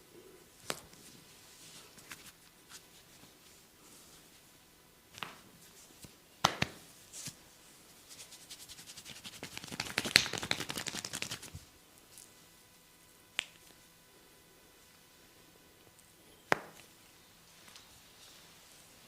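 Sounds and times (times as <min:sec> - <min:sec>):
rapid hand taps: 0:09.3 - 0:11.5.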